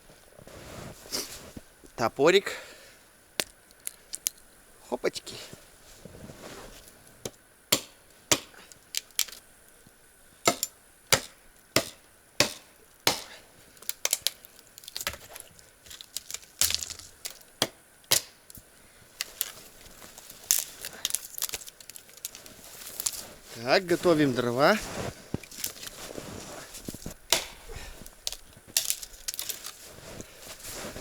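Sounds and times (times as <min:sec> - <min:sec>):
wood crackling: 0:03.4 - 0:31.0
hatchet chopping dry wood: 0:07.7 - 0:08.6, 0:10.5 - 0:14.4, 0:16.3 - 0:18.4, 0:27.2 - 0:27.7.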